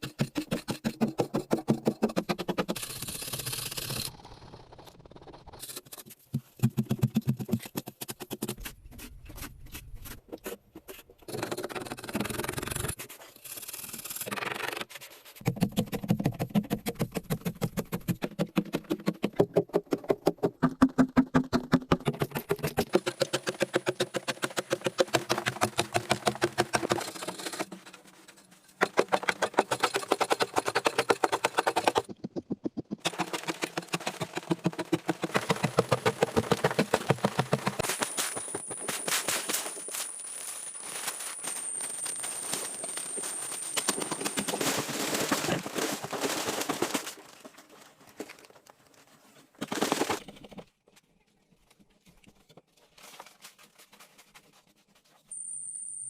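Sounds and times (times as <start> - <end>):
rapid scraping and knocking: 21.7 - 39.6.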